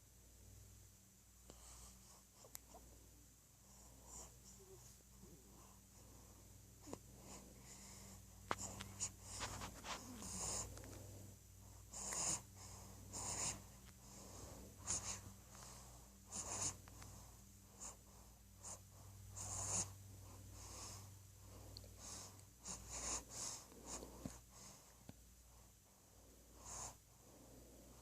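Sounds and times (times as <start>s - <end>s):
baby snoring: 6.8s - 21.1s, 22.0s - 24.8s.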